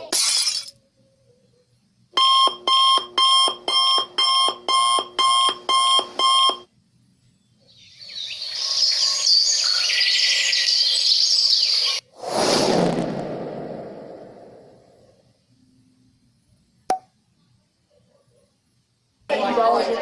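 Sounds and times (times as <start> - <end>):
electronic alarm beeping: 2.2 - 6.7
birds chirping: 7.3 - 12.0.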